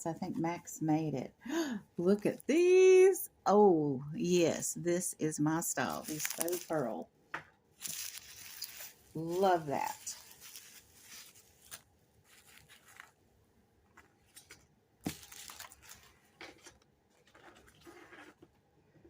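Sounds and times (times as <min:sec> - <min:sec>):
paper and plastic rustling: 0:05.9 - 0:07.0, 0:07.8 - 0:13.2, 0:13.9 - 0:18.5.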